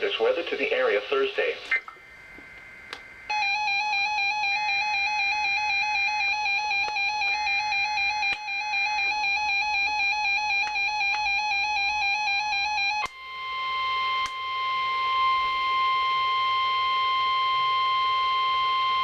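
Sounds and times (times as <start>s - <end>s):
buzzy electronic alarm tone: 3.2s - 19.0s.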